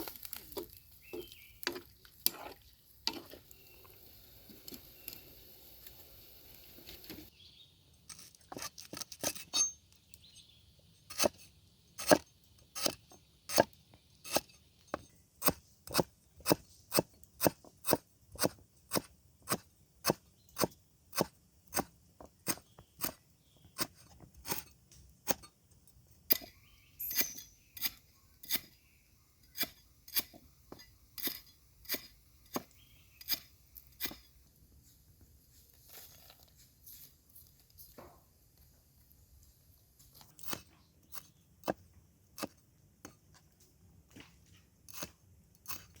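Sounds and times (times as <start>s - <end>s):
faint frying sizzle: 0.0s - 7.3s.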